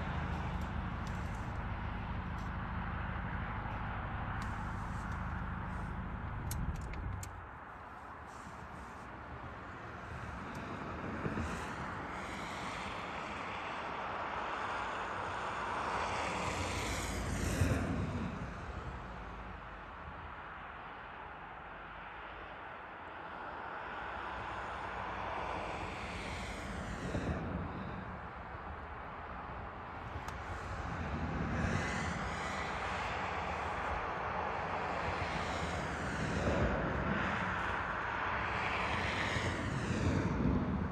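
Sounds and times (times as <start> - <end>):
vehicle passing: 0.0 - 10.4, 23.8 - 40.9.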